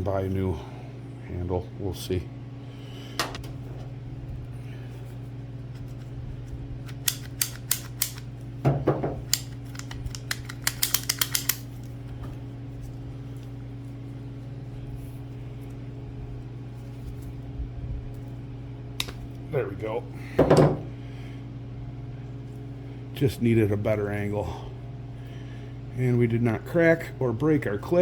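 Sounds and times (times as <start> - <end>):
steady low hum: 0.0 - 28.0
latch handle clicking: 9.2 - 11.6.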